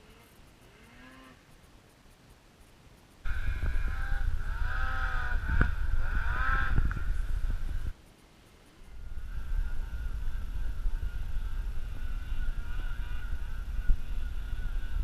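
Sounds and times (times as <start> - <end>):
snowmobile engine revving: 0.0 - 1.5, 3.3 - 7.9, 8.9 - 15.0.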